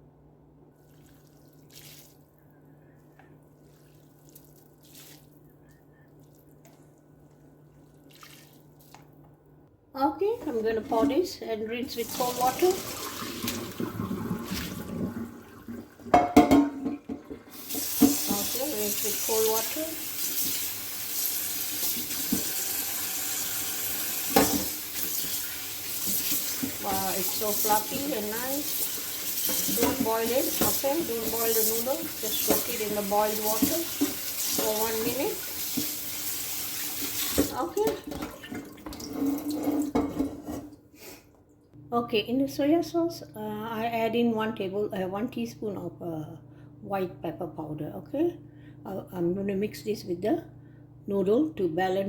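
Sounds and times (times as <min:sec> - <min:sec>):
tap water running into sink: 0:12.0 - 0:40.0
low steady hum: 0:41.5 - 0:52.0.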